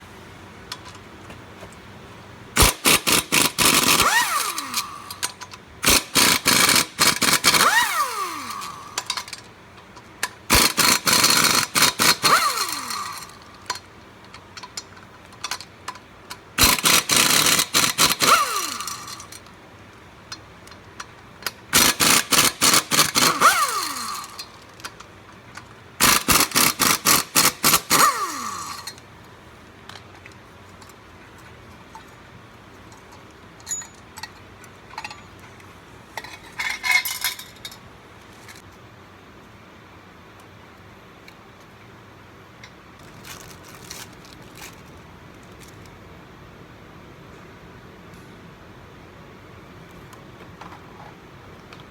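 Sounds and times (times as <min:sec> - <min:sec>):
power tool hammering clicks: 0:16.6 - 0:19.4, 0:21.7 - 0:24.6.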